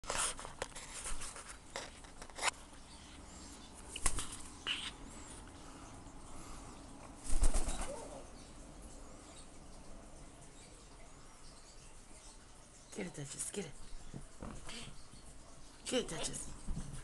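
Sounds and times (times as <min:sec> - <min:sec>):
parrot flapping wings: 0:03.9 - 0:04.9, 0:07.2 - 0:08.2.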